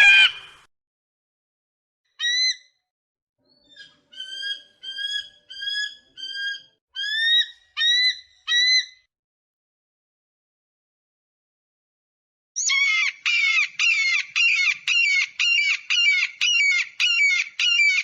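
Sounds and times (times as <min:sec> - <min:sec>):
eagle calling in piping notes: 0:12.6 - 0:18.0.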